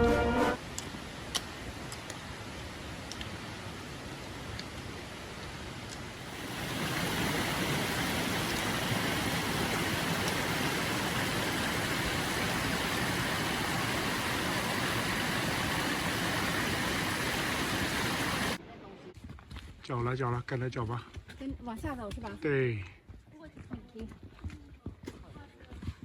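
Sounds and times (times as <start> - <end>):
stream water flowing: 6.0 - 18.6.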